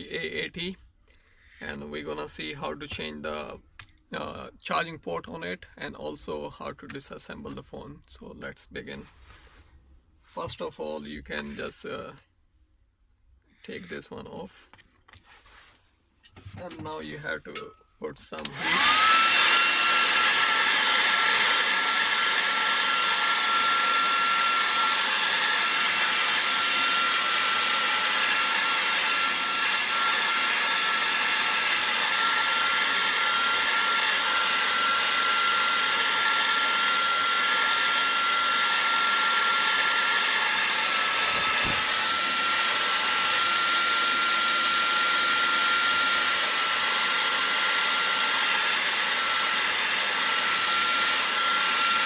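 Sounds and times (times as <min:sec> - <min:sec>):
hot-air blower running: 0:18.4 - 0:52.0.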